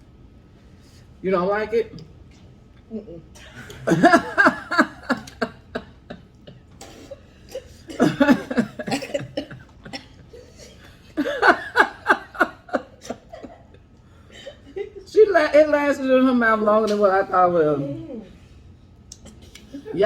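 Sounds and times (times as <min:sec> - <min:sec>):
people laughing: 0:03.4 - 0:15.1.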